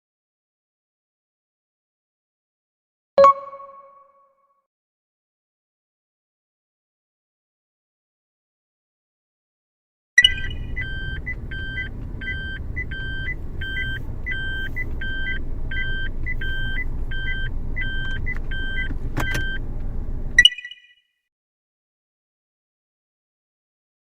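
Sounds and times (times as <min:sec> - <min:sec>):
electronic beep repeating: 0:03.2 - 0:04.1, 0:20.4 - 0:21.0
car engine low rumble: 0:10.2 - 0:20.4.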